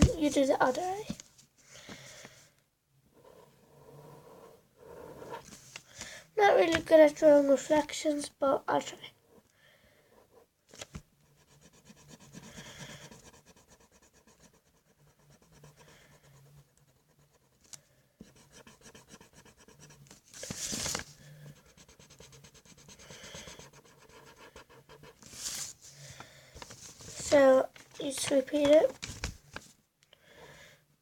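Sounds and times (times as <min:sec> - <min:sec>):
marker scratching on paper: 0:03.2 - 0:05.6, 0:11.2 - 0:25.8.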